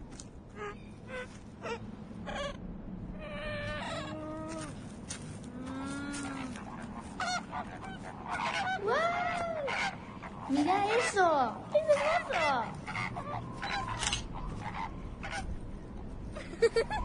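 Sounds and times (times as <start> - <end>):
steady low rumble: 0.0 - 17.0
goose-like honking calls: 6.1 - 15.5.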